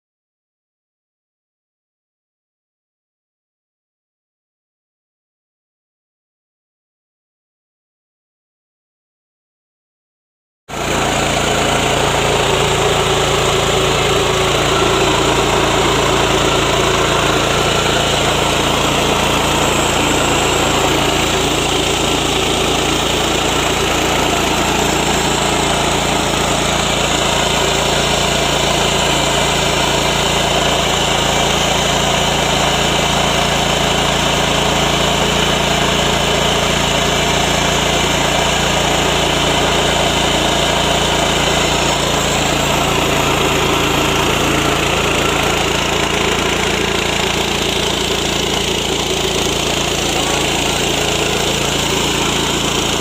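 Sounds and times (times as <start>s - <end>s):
small engine driving milling machine: 10.7s - 53.0s.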